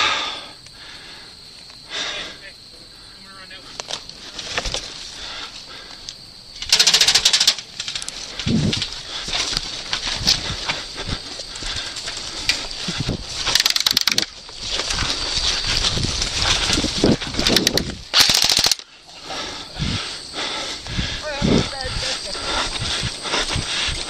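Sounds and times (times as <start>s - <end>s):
airsoft gun bursts: 6.7s - 7.6s, 13.5s - 14.3s, 17.5s - 18.8s.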